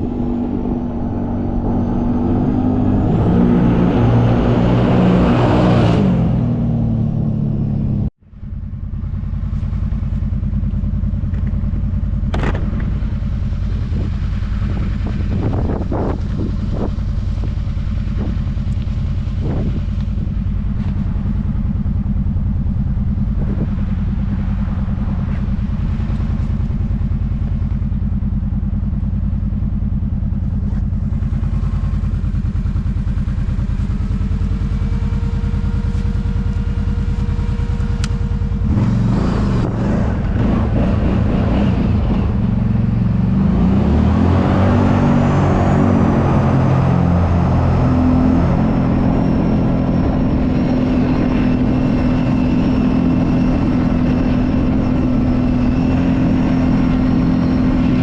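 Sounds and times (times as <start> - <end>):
atv engine running: 0.0 - 58.0
knocks and clatter: 12.2 - 13.1.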